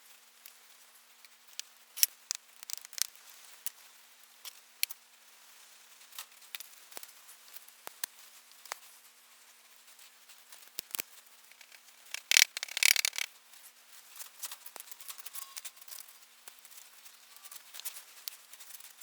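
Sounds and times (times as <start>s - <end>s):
light crackling and ticking: 0.4s - 19.0s
sharp clicks: 2.6s - 3.1s, 10.8s - 13.3s.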